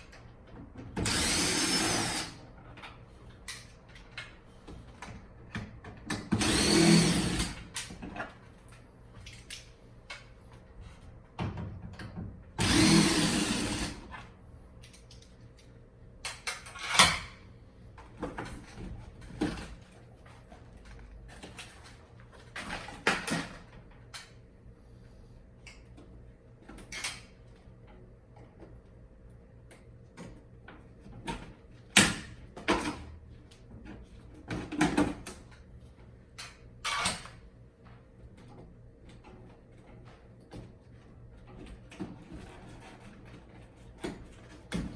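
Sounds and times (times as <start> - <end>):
power drill-driver running: 1.0 - 2.4, 6.4 - 7.6, 12.6 - 14.0
clicks and knocks of parts handled: 7.6 - 10.6, 14.8 - 17.4.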